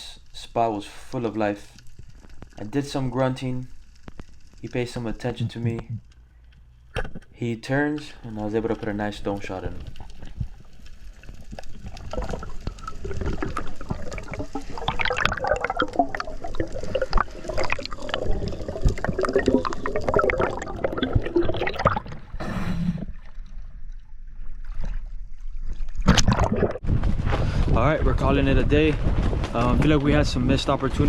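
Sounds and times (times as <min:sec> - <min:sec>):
underwater bubbling: 0:08.5 - 0:26.9.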